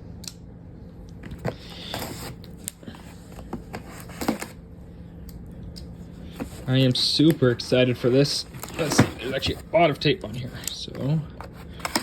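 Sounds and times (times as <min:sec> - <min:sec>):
faint steady hum: 0:00.0 - 0:12.0
cardboard box rustling: 0:06.3 - 0:09.9.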